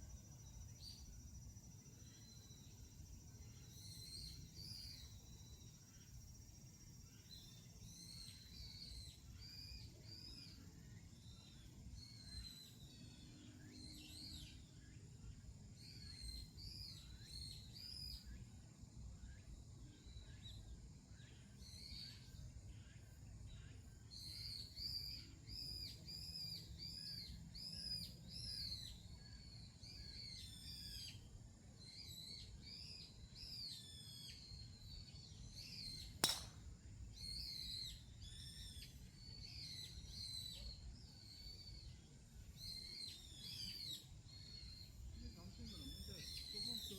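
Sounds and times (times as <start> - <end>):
songbirds chirping: 0.0 - 46.9
sharp click: 36.2 - 36.6.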